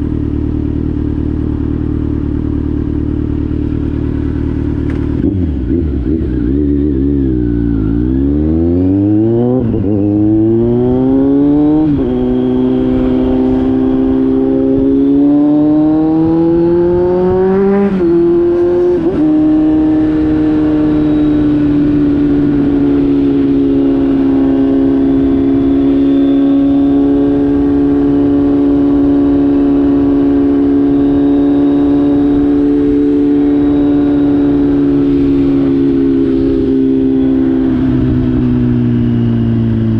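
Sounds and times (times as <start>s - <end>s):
motorcycle engine revving through gears: 0.0s - 39.9s.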